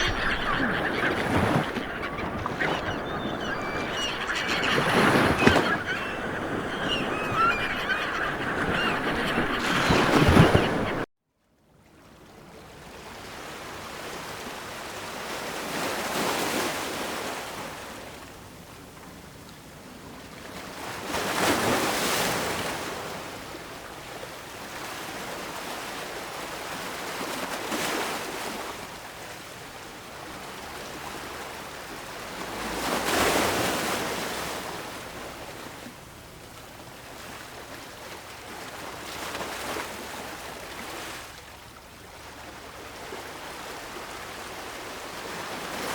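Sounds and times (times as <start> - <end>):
ocean waves breaking on beach: 0.0 - 11.1, 24.5 - 45.9.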